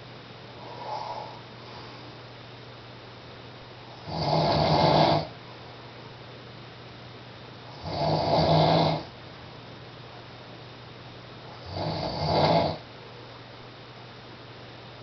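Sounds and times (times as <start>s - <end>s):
steady low hum: 0.0s - 15.0s
man snoring: 0.6s - 1.4s, 4.0s - 5.3s, 7.7s - 9.1s, 11.5s - 12.8s.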